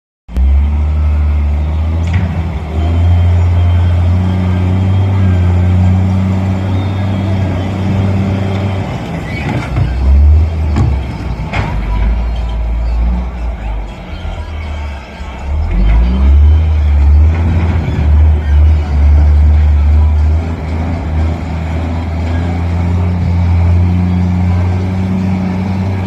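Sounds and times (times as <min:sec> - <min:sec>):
truck diesel engine droning: 0:00.3 - 0:26.0.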